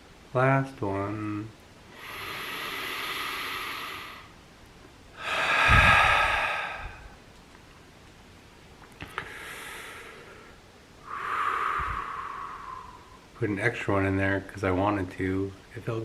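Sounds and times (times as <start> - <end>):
man breathing deeply: 1.9 - 4.3, 5.2 - 7.2, 9.0 - 13.3
breath puffing on microphone: 5.3 - 7.2.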